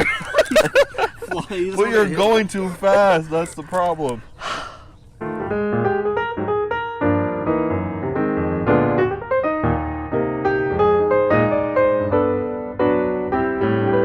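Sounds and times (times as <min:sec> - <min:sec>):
piano music: 0:05.2 - 0:14.0.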